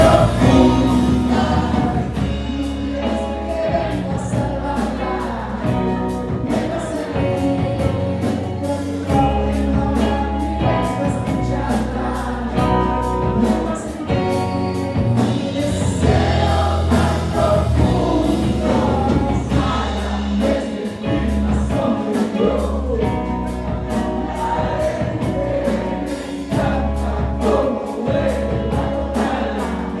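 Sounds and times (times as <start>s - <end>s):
drum beat: 0.0s - 4.5s, 15.1s - 23.3s
bass line: 0.0s - 30.0s
sung vocals: 0.0s - 30.0s.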